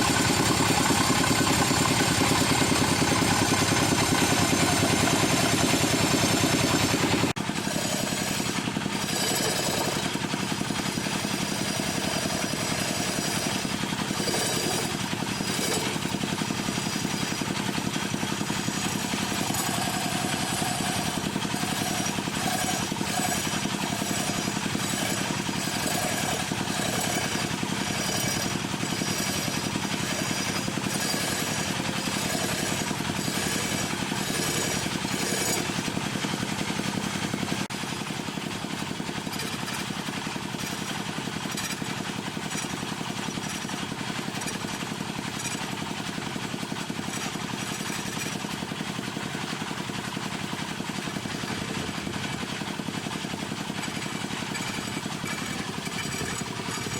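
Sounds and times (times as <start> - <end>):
turning tool rattling on wood: 0.0 - 56.9
wood lathe running: 0.0 - 56.9.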